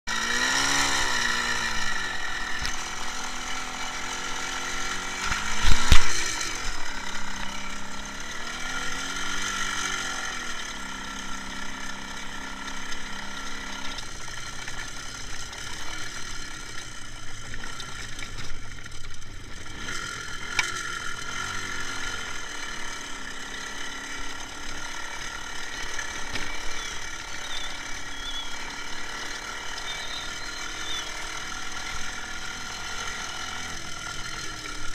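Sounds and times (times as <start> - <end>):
motorcycle engine running: 0.1 - 34.9.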